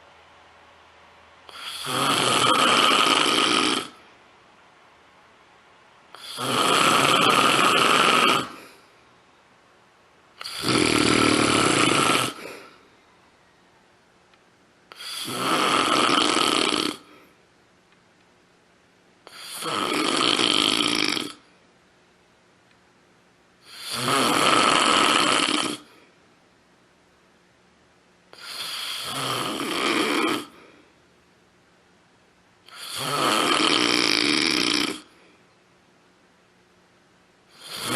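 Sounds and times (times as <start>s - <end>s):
loud rasping snoring: 1.5s - 4.0s, 6.1s - 8.8s, 10.4s - 12.8s, 14.9s - 17.2s, 19.3s - 21.5s, 23.6s - 26.0s, 28.4s - 30.7s, 32.7s - 35.2s, 37.5s - 37.9s
quiet breathing: 8.4s - 9.5s, 12.3s - 14.0s, 17.0s - 17.5s, 25.8s - 26.3s, 30.4s - 31.1s, 35.0s - 35.7s.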